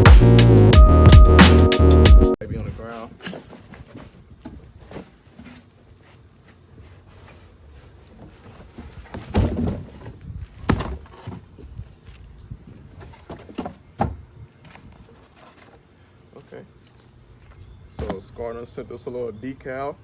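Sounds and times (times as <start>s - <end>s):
knocks and thumps on box: 9.0s - 11.4s.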